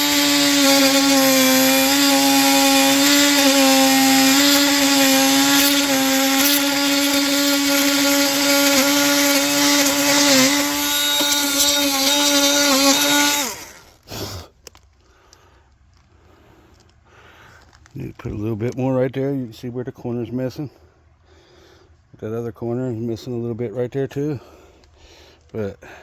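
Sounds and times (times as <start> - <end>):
electric sander running: 0.0 - 14.0.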